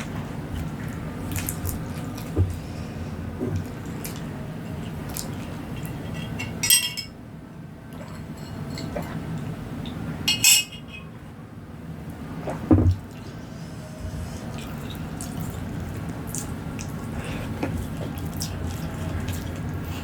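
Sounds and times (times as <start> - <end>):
cutlery clinking on a plate: 6.1 - 7.2.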